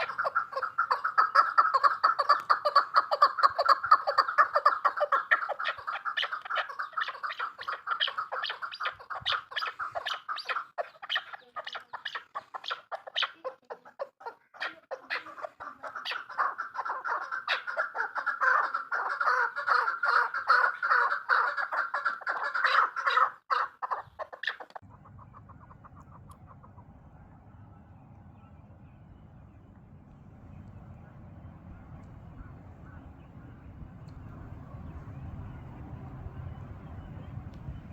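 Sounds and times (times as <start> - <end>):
partridge clucking calls: 0.0 - 27.0
quiet steady low hum: 24.8 - 37.9.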